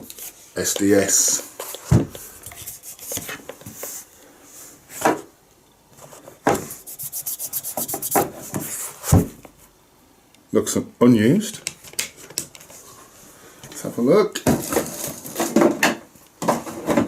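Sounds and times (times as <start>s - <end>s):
packaging rubbing and scraping: 6.7s - 8.4s.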